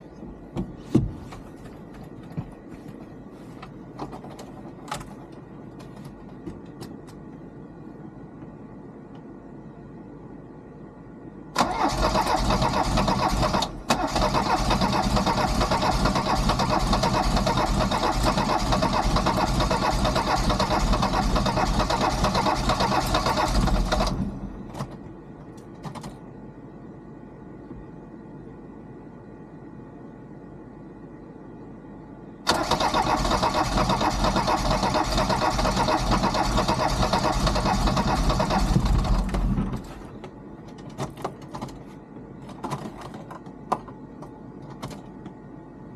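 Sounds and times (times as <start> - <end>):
diesel engine running: 11.6 - 24.7, 32.5 - 40.2.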